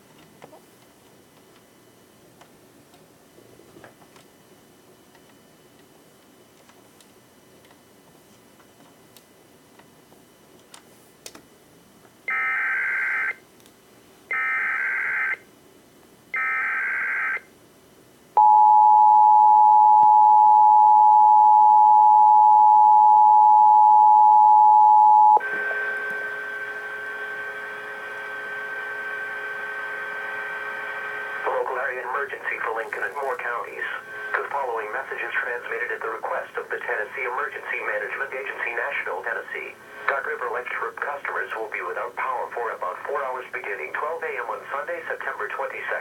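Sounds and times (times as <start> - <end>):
quiet steady buzz of tones: 0.0 - 46.0
two-tone attention signal: 18.4 - 26.0.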